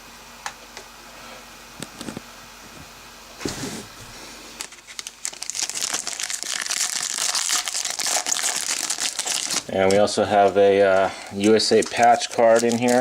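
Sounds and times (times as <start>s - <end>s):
wrapper crinkling and tearing: 4.5s - 13.0s.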